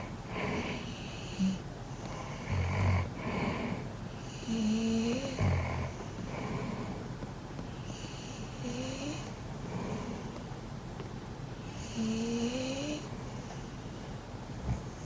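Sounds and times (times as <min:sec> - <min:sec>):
dog snoring: 0:00.0 - 0:07.1, 0:07.8 - 0:10.4, 0:11.7 - 0:13.5.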